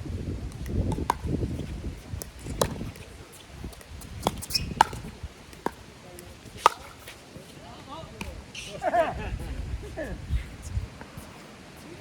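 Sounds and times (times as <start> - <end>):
wind noise: 0.0 - 5.7, 7.9 - 12.0
paddles striking plastic ball: 3.7 - 7.1.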